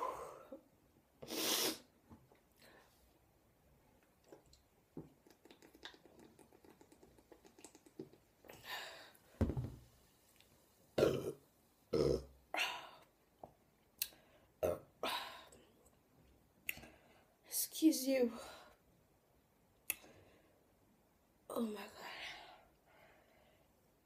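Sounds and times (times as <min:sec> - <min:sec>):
woman burping loudly: 0:11.0 - 0:12.3.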